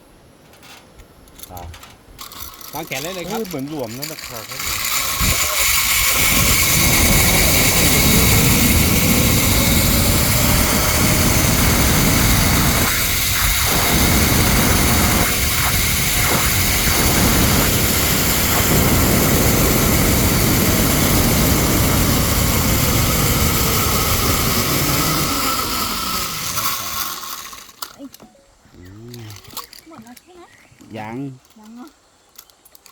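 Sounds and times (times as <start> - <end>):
zipline trolley whirring on cable: 2.2 - 28.1
wind rush: 4.5 - 27.2.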